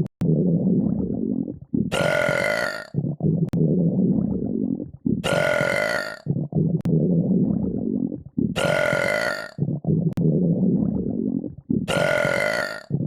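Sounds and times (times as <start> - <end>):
person burping: 1.9 - 2.9, 5.2 - 6.2, 8.6 - 9.6, 11.9 - 13.0.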